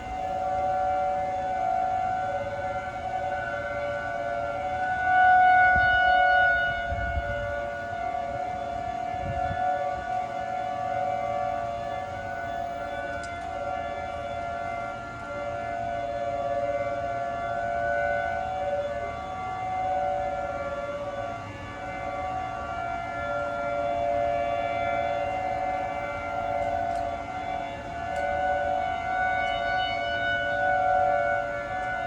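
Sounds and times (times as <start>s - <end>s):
dual-tone warning siren: 0.0s - 32.0s.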